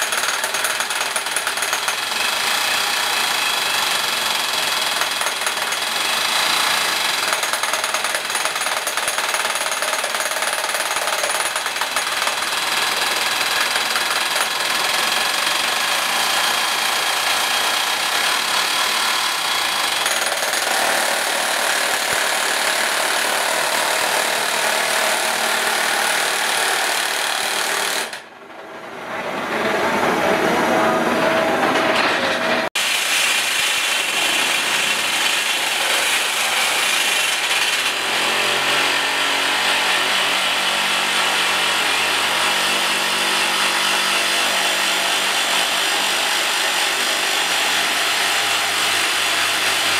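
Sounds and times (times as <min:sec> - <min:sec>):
rock drills hammering: 0:00.0 - 0:28.3, 0:32.7 - 0:38.9.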